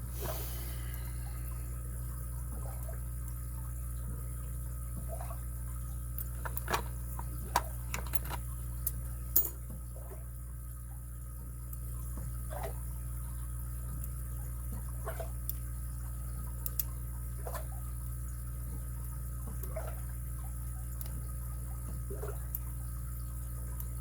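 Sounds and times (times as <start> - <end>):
steady low hum: 0.0 - 24.0
lock pick clicking in padlock: 7.9 - 8.4.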